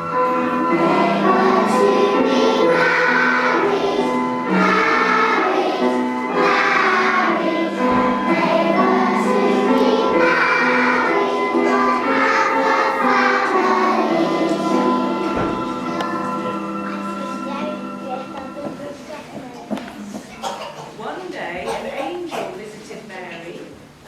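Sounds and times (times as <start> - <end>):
children's choir singing: 0.0 - 19.2.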